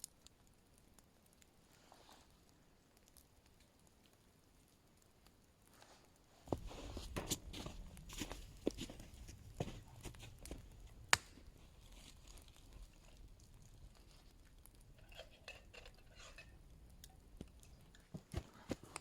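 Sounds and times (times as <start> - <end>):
camping gear rustling and clicking: 5.8 - 16.6, 17.4 - 19.0.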